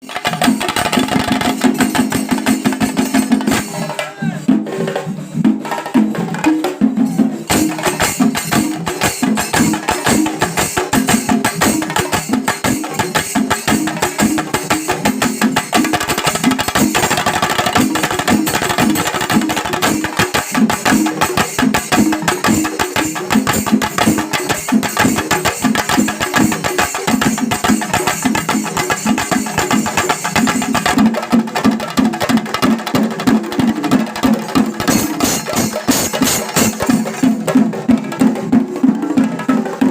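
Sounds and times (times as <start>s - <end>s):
rapid dense drumming: 0.0s - 39.9s
cymbals clashing: 34.8s - 37.4s.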